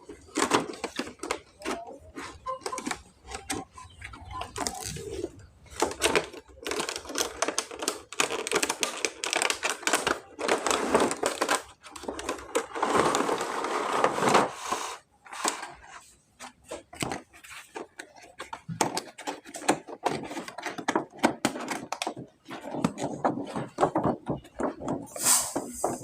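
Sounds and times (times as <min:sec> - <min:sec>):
plastic toys clicking: 0:00.0 - 0:13.4, 0:15.3 - 0:26.0
packaging rustling: 0:04.4 - 0:16.0.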